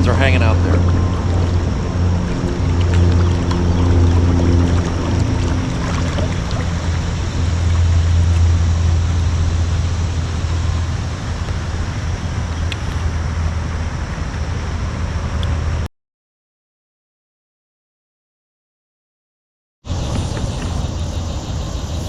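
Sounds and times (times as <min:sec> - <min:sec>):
rushing water: 0:00.0 - 0:15.8
wind noise: 0:00.0 - 0:15.9.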